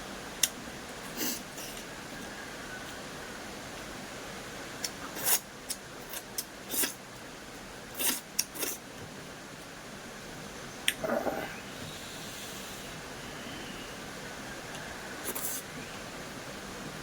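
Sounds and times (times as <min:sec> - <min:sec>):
stream hissing: 0:11.0 - 0:13.9.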